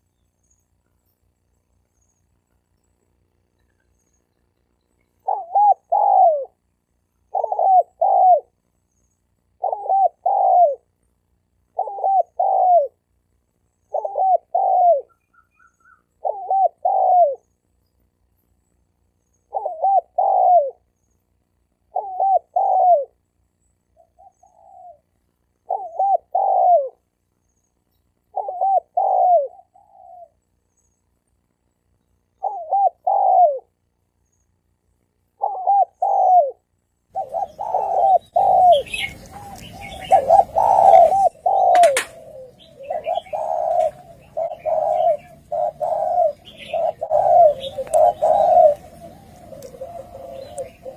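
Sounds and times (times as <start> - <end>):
dove cooing: 5.1 - 8.6, 9.5 - 10.9, 11.6 - 13.1, 13.9 - 17.5, 19.4 - 20.9, 21.8 - 23.2, 24.0 - 27.1, 28.3 - 30.4, 32.3 - 33.8, 35.3 - 50.9.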